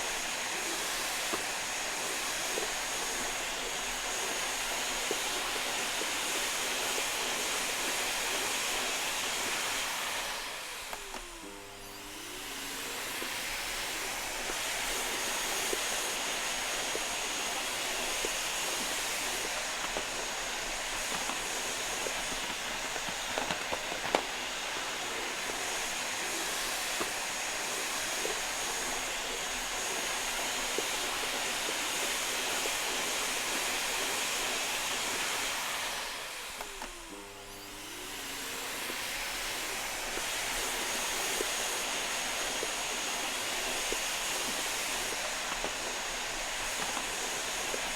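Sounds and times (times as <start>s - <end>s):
vacuum cleaner running: 0.0s - 47.9s
small clicks: 10.9s - 11.4s.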